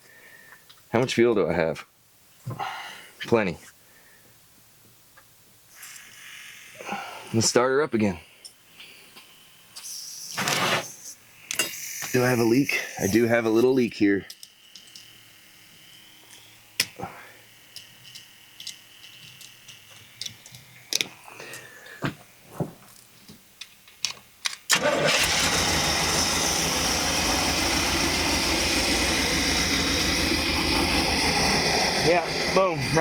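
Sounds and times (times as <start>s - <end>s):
engine running loudly: 24.8s - 33.0s.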